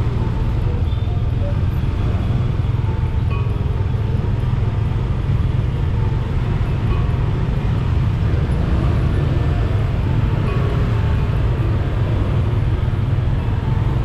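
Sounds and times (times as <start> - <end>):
street traffic rumble: 0.0 - 14.0.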